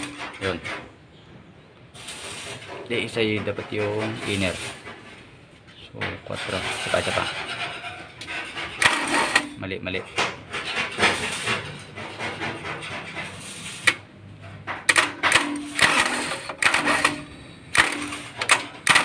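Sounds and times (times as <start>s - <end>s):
starter motor cranking engine: 14.9s - 19.0s.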